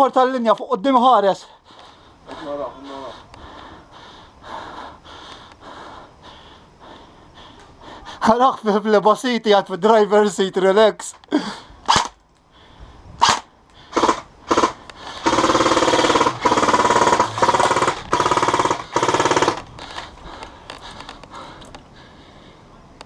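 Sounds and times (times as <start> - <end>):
airsoft gun shots: 11.9 - 12.2, 13.2 - 19.7.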